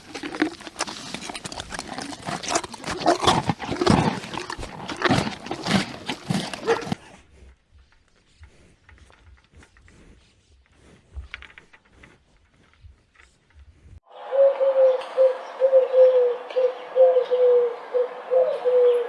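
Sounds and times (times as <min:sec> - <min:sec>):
farm animals calling: 0:14.1 - 0:19.0.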